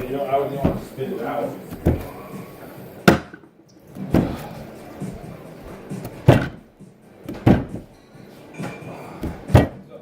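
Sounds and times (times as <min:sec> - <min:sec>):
sharp thumps on hard surface: 0:00.6 - 0:00.9, 0:05.9 - 0:08.0, 0:08.6 - 0:09.8.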